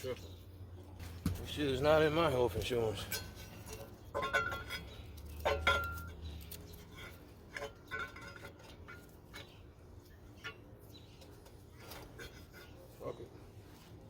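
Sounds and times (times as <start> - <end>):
metal parts clanking: 2.9 - 9.5.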